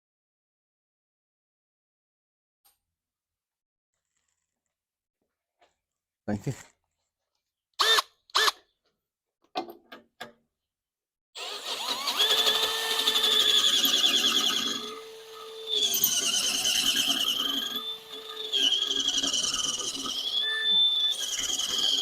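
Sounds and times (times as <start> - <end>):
electric drill drilling into steel: 7.8 - 8.6, 11.4 - 22.0.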